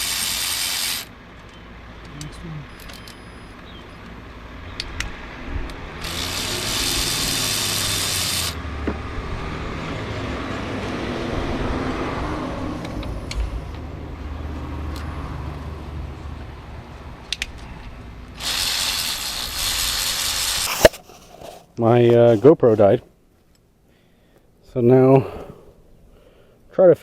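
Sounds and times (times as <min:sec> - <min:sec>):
low rumble: 0:08.6 - 0:18.4
sharp handling clicks: 0:17.2 - 0:17.7.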